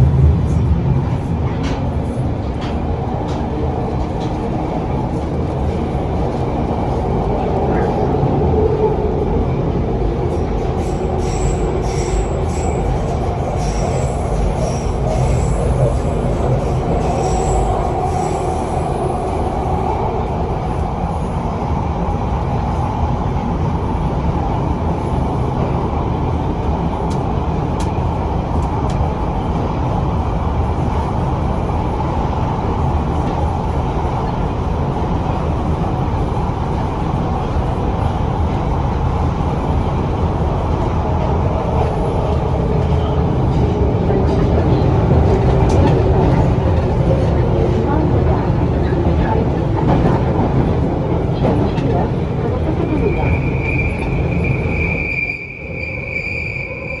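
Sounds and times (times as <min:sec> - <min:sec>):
train wheels rumbling on track: 0:00.0 - 0:57.0
high wheel squeal: 0:52.8 - 0:57.0.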